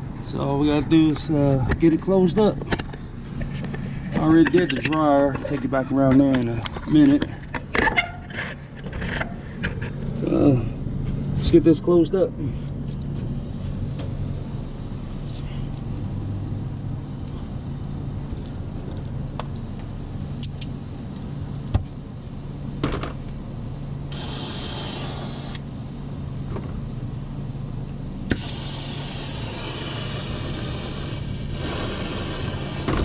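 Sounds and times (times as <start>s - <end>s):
steady low hum: 0.0s - 33.0s
gas hissing: 24.1s - 25.7s, 28.3s - 33.0s.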